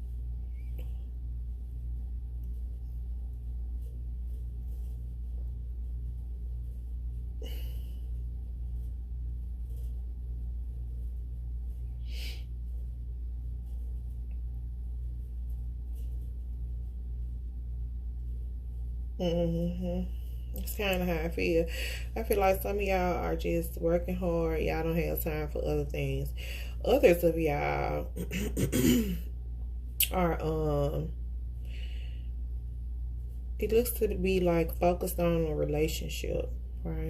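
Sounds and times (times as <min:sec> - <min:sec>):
soft rustling: 0:00.0 - 0:19.2, 0:32.5 - 0:33.6
low background hum: 0:00.0 - 0:37.0.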